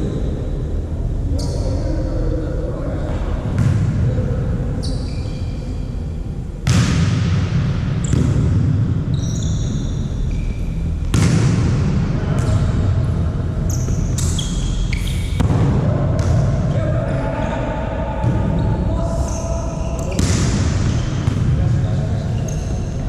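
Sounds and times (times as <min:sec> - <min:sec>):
murmur of gym hall: 0:00.0 - 0:23.0
sneakers squeaking on court floor: 0:04.8 - 0:05.8, 0:08.0 - 0:08.5, 0:09.1 - 0:11.2, 0:13.6 - 0:15.4, 0:19.3 - 0:20.5, 0:22.2 - 0:23.0
volleyball struck sharply: 0:11.1 - 0:11.9.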